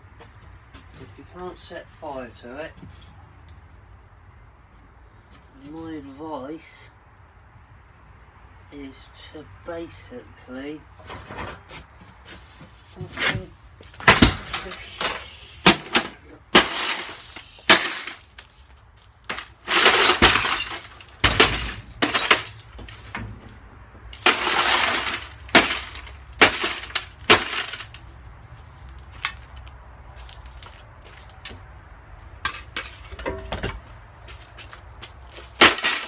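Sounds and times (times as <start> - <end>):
printer being smashed: 14.0 - 14.7
plastic and glass breaking: 15.7 - 18.6, 19.3 - 22.8, 24.2 - 28.0, 35.6 - 36.0.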